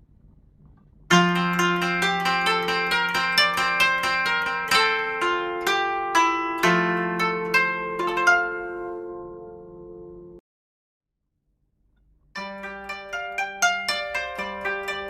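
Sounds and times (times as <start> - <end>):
plucked string melody: 1.1 - 10.4, 12.4 - 15.0.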